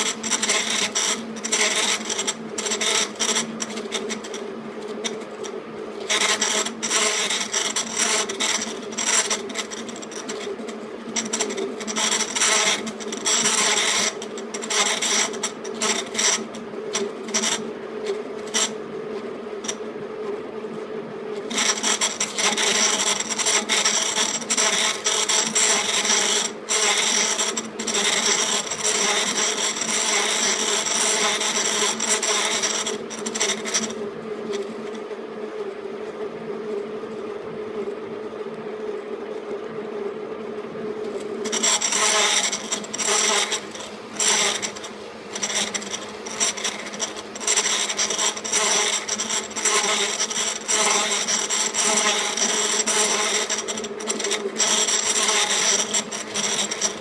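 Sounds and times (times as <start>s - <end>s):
cutting tool scraping metal: 0.0s - 4.4s, 6.1s - 10.5s, 11.2s - 16.6s, 21.5s - 34.0s, 41.5s - 57.0s
lathe humming: 21.5s - 34.5s, 41.3s - 57.0s.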